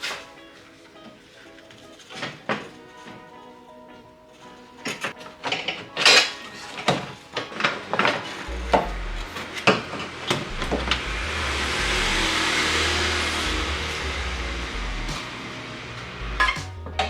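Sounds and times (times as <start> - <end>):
steady hiss: 7.7 - 17.0.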